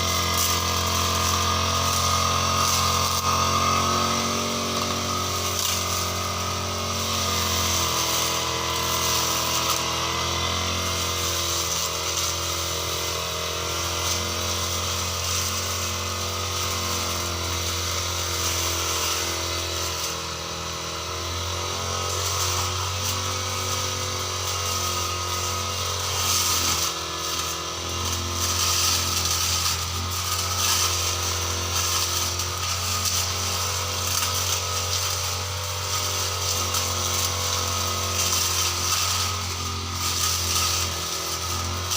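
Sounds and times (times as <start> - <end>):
brush cutter engine cutting grass: 0.0 - 41.9.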